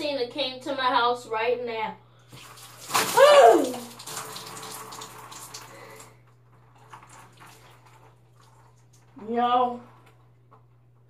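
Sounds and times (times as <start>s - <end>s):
water splashing and dripping: 2.3s - 6.1s, 6.7s - 9.2s.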